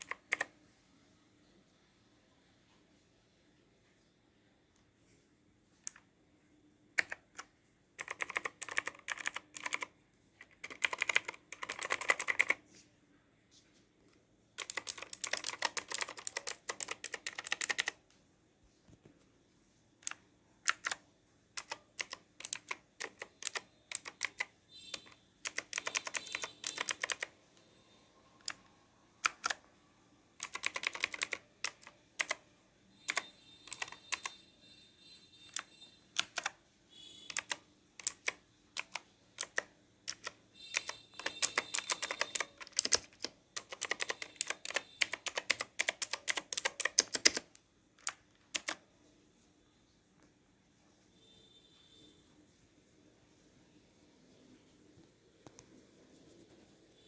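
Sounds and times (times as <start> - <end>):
clicky mechanical keyboard typing: 0.0 - 0.5, 7.0 - 12.6, 14.6 - 18.0, 20.0 - 21.0, 21.6 - 27.3, 28.4 - 29.6, 30.4 - 32.4, 33.0 - 34.4, 35.5 - 36.6, 37.3 - 48.8.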